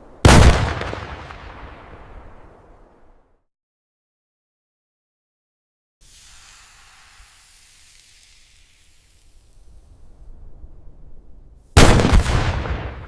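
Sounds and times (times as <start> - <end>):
loud explosion: 0.2 - 2.0, 11.8 - 13.0
fuse hissing: 6.0 - 10.5.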